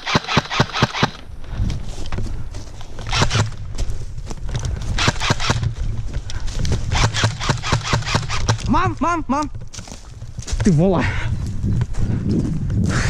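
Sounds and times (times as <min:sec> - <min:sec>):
airsoft gun shots: 0:00.0 - 0:01.2, 0:03.1 - 0:03.5, 0:05.0 - 0:05.7, 0:06.9 - 0:08.8.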